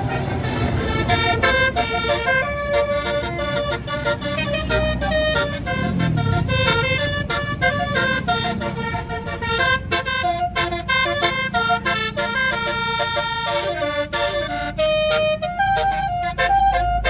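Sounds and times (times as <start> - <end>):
bus engine rumble: 0.0 - 17.0
bus horn playing melody: 0.0 - 17.0.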